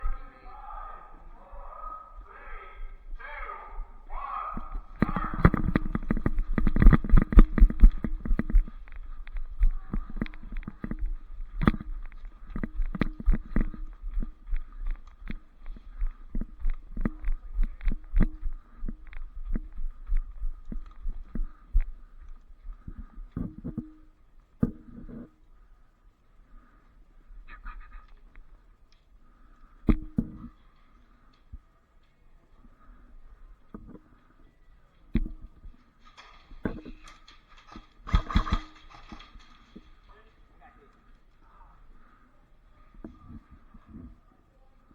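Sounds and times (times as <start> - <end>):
steady low rumble: 0.0 - 30.6
faint rustle: 0.0 - 44.9
dull thumps and knocks: 4.6 - 21.9, 22.9 - 25.3, 29.9 - 30.5, 35.2 - 35.7.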